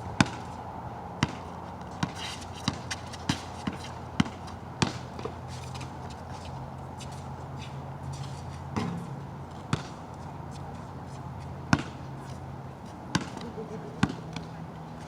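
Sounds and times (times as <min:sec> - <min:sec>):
basketball bouncing: 0:00.2 - 0:00.5, 0:01.2 - 0:01.4, 0:02.7 - 0:05.3, 0:08.7 - 0:10.0, 0:11.7 - 0:12.0, 0:13.1 - 0:14.5.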